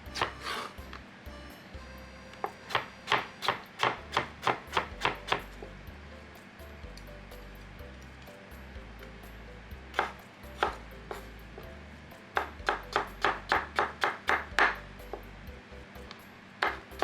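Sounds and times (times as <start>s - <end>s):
knife chopping vegetables on board: 0.1s - 1.0s, 2.4s - 5.7s, 9.9s - 11.3s, 12.3s - 15.3s, 16.6s - 17.0s.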